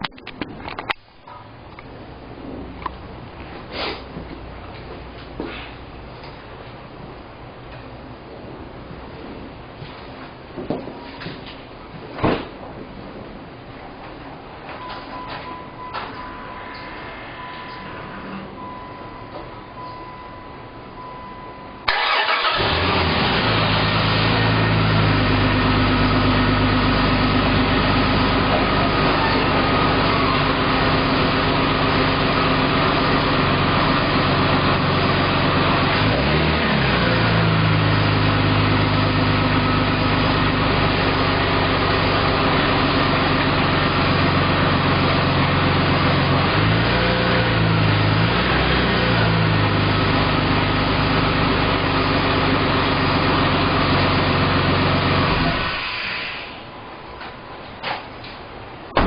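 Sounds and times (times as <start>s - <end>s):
car engine starting and idling: 0.0s - 57.2s.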